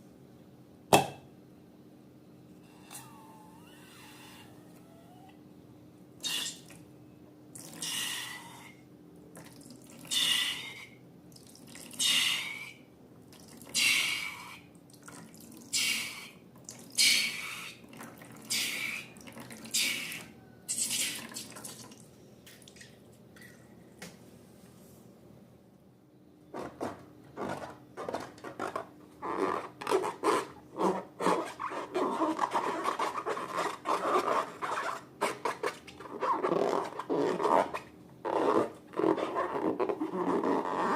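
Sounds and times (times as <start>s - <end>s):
liquid squirting: 15.0s - 23.6s.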